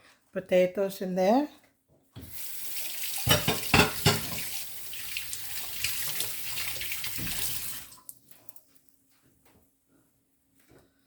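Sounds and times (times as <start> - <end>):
tap running into sink: 3.2 - 4.6, 5.8 - 7.8.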